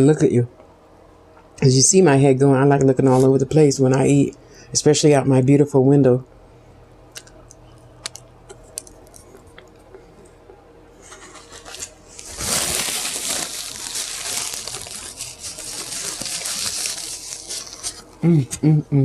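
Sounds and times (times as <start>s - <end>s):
paper packaging crinkling: 11.0s - 18.2s.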